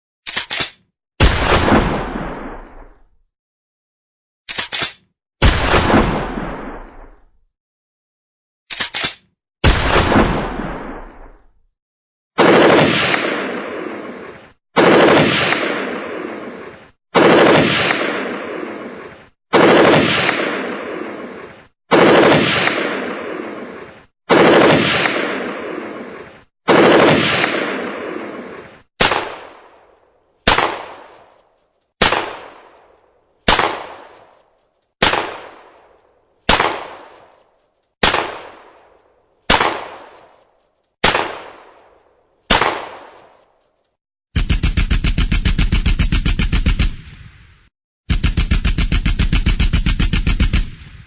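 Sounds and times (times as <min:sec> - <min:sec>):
sharp single gunshots: 0:00.3 - 0:03.0, 0:04.5 - 0:07.3, 0:08.8 - 0:11.5, 0:19.5 - 0:21.0, 0:29.0 - 0:29.8, 0:30.4 - 0:31.3, 0:32.0 - 0:32.8, 0:33.5 - 0:34.4, 0:35.0 - 0:35.9, 0:36.5 - 0:37.3, 0:38.0 - 0:38.8, 0:39.5 - 0:40.4, 0:41.0 - 0:41.9, 0:42.5 - 0:43.4
heavy echoing gunshots: 0:01.2 - 0:02.8, 0:05.4 - 0:07.2, 0:09.6 - 0:11.4, 0:12.4 - 0:14.1, 0:14.8 - 0:16.4, 0:17.2 - 0:18.9, 0:19.5 - 0:21.3, 0:21.9 - 0:23.6, 0:24.3 - 0:26.0, 0:26.7 - 0:28.4, 0:29.0 - 0:31.3, 0:32.0 - 0:32.8, 0:33.5 - 0:34.2, 0:35.0 - 0:37.2, 0:38.0 - 0:38.9, 0:39.5 - 0:40.2, 0:41.0 - 0:41.9, 0:42.5 - 0:43.3.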